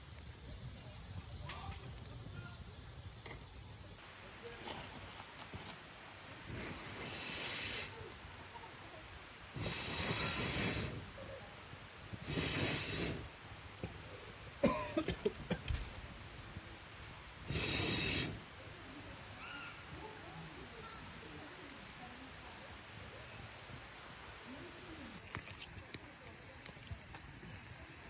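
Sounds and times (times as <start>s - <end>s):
sharp clicks and crackles: 0.0s - 4.0s, 18.4s - 28.0s
hard puffs of breath: 6.4s - 8.0s, 9.5s - 11.2s, 12.2s - 13.3s, 17.5s - 18.5s.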